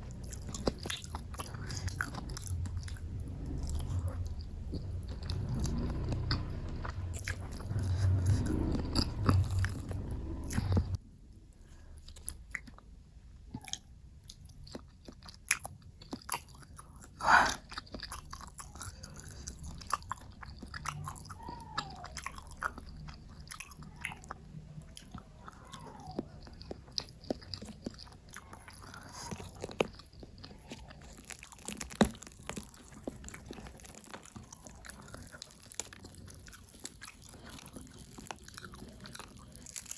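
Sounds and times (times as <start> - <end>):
person chewing and crunching food: 0.0 - 39.9.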